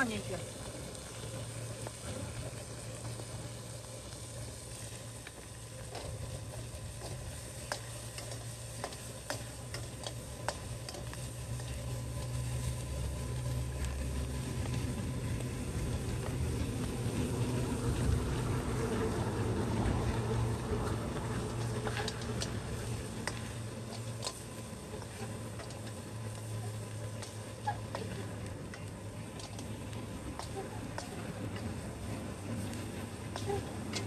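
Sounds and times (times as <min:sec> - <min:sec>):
food sizzling in hot oil: 0:00.0 - 0:34.0
utensil clicking against pan: 0:07.0 - 0:12.4, 0:27.2 - 0:29.8.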